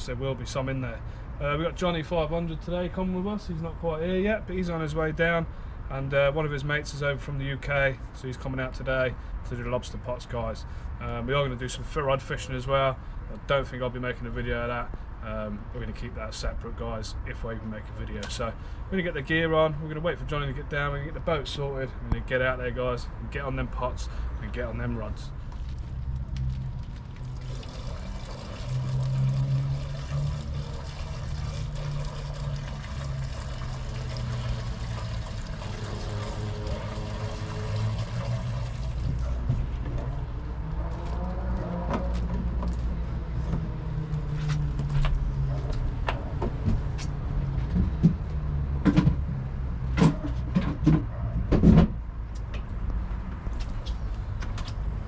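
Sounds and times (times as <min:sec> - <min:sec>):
knocks and clatter: 0:47.6 - 0:52.0.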